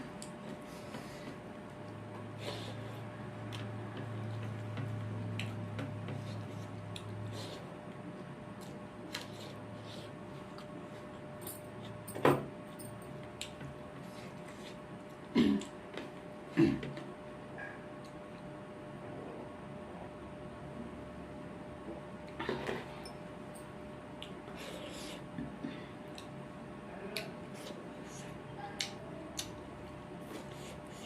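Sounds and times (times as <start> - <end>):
low steady hum: 0.0 - 31.0
person chewing food: 0.1 - 12.0, 27.2 - 31.0.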